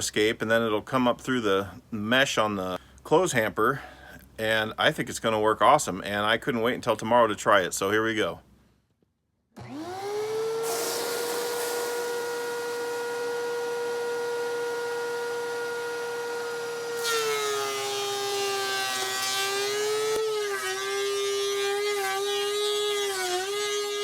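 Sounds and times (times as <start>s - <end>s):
planer cutting board: 9.6s - 24.0s
thickness planer whining: 9.6s - 24.0s.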